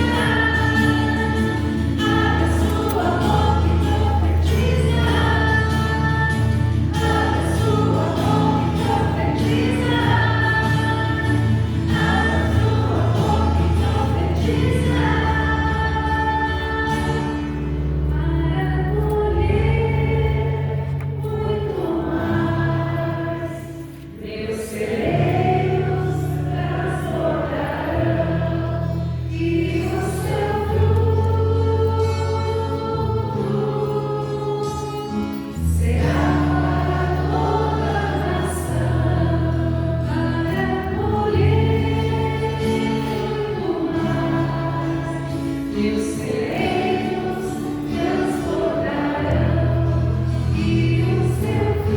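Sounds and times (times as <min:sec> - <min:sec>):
sustained bass: 0:00.0 - 0:24.1, 0:35.0 - 0:51.9
keyboard accompaniment: 0:00.0 - 0:51.9
voices singing worship song: 0:00.0 - 0:51.9.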